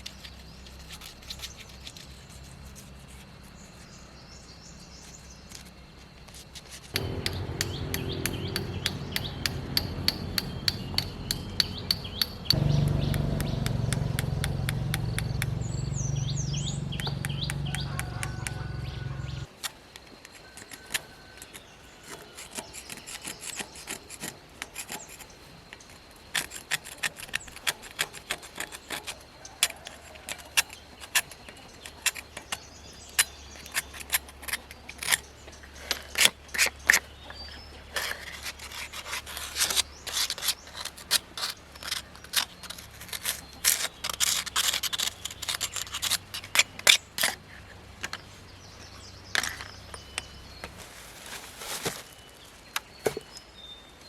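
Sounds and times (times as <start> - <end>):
hand tool scraping metal: 6.4 - 12.7, 26.4 - 47.7
sharp clicks and taps: 6.9 - 15.7, 16.9 - 18.6.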